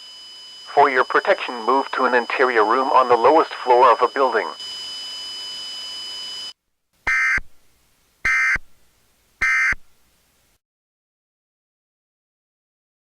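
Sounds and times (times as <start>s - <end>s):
faint high whine: 0.0s - 10.6s
electronic warbling squawks: 7.1s - 7.4s, 8.3s - 8.6s, 9.4s - 9.8s.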